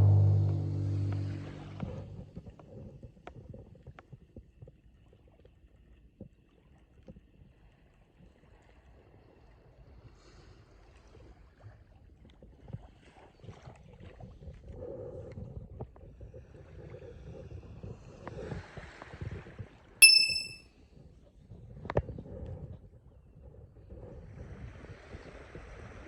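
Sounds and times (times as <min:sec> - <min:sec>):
low outdoor rumble: 0:00.0 - 0:02.3
metallic ding: 0:20.0 - 0:20.6.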